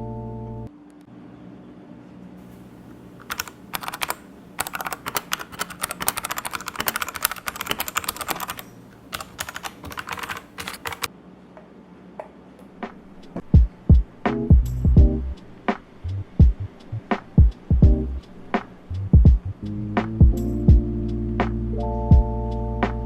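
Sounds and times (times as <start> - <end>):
mechanical keyboard key clacks: 3.2 - 11.1.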